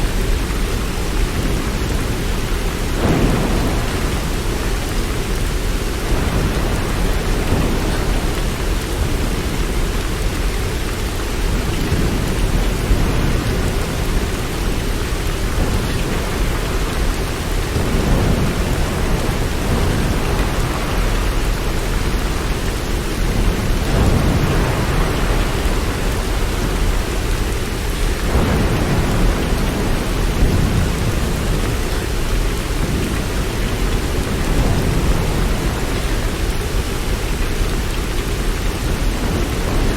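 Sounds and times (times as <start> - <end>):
low rolling thunder: 0.0 - 39.9
steady rain: 0.0 - 39.9.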